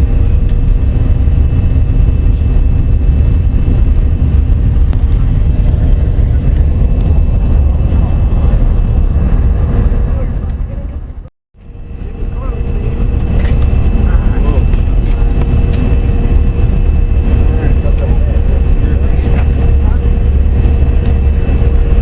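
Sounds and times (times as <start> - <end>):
jet cabin low rumble: 0.0 - 22.0.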